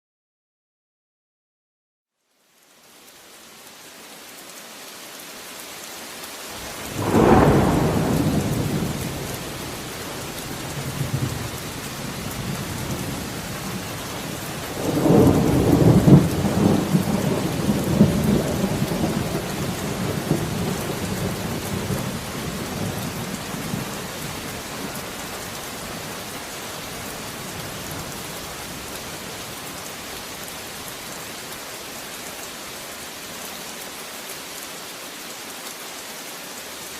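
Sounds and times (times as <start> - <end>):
steady rain: 2.1 - 36.9
thunder: 6.6 - 25.0.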